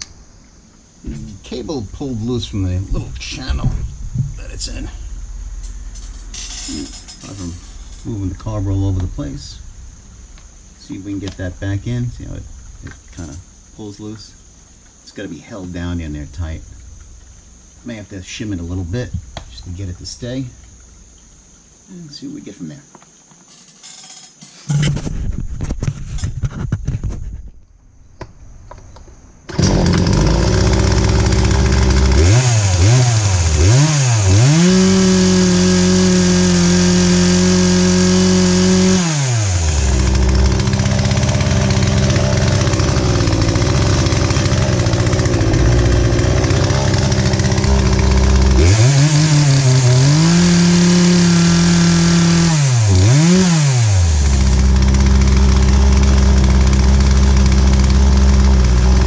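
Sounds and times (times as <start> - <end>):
chainsaw idling and revving: 29.5 - 59.0.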